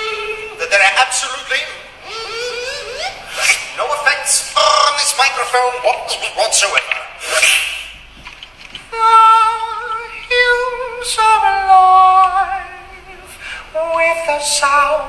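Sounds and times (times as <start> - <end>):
man singing high wavering melody: 0.0 - 1.0, 1.9 - 3.8, 8.9 - 15.0.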